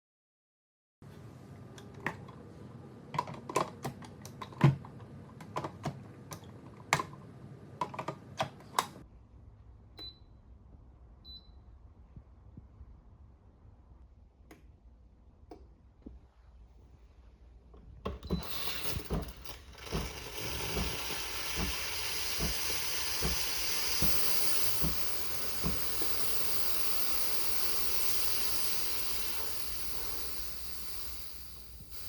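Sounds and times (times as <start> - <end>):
espresso machine steam hissing: 18.3 - 32.0
sputtering steam pops: 18.3 - 32.0.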